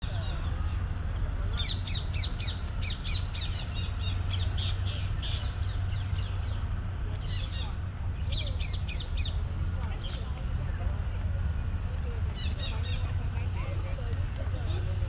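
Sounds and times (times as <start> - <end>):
birds chirping: 1.4 - 10.4, 12.1 - 13.8.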